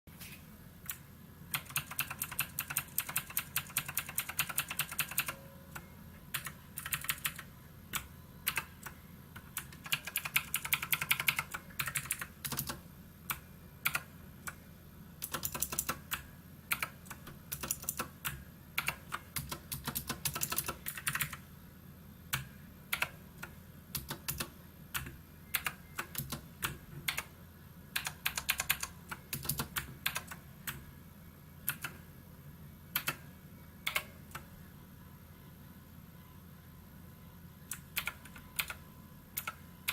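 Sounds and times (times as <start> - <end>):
mechanical keyboard typing: 0.8 - 5.4, 6.3 - 14.6, 15.2 - 21.4, 22.3 - 27.3, 28.0 - 30.9, 31.6 - 32.0, 32.9 - 33.2, 37.7 - 39.9.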